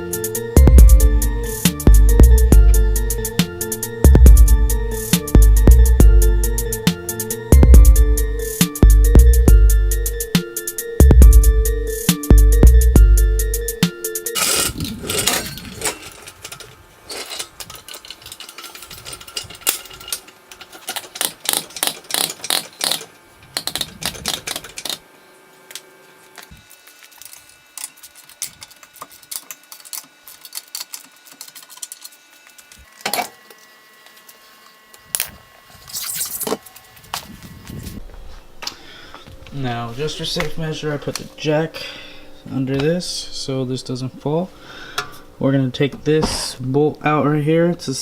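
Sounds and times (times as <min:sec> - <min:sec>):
metallic clicks of hand tools: 0:14.4 - 0:25.0.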